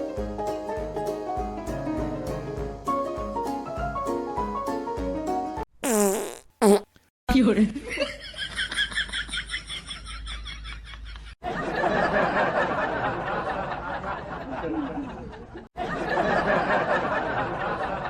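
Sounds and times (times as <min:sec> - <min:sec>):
people laughing: 0:07.8 - 0:18.0.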